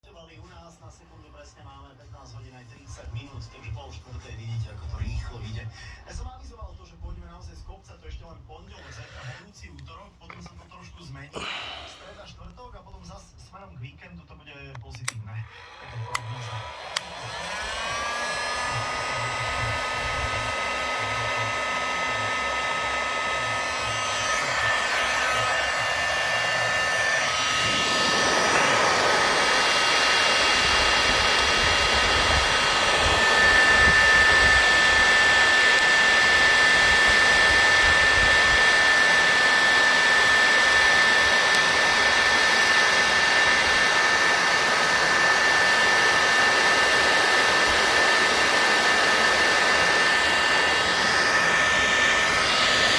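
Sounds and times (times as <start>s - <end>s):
hot air gun blowing with whine: 11.4s - 12.3s, 15.0s - 52.9s.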